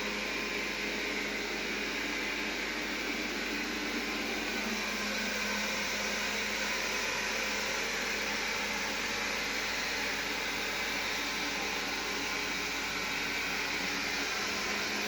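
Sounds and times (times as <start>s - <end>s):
robot vacuum whirring: 0.0s - 15.0s.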